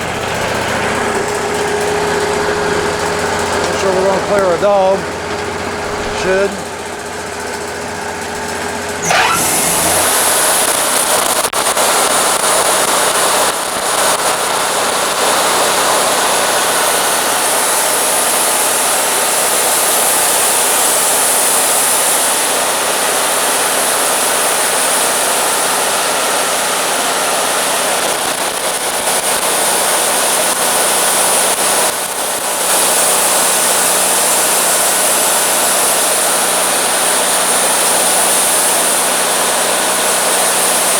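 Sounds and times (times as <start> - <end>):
band sawmill cutting log: 0.0 - 16.8.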